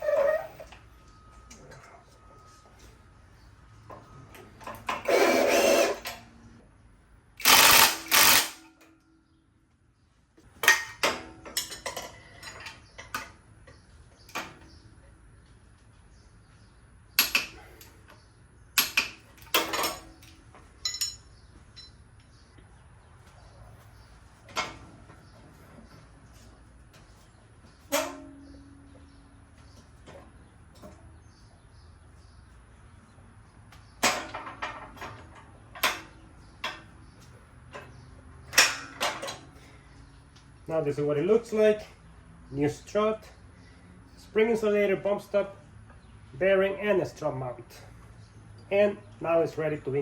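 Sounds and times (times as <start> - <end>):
power tool bursts: 5.0 - 6.2, 7.4 - 8.7.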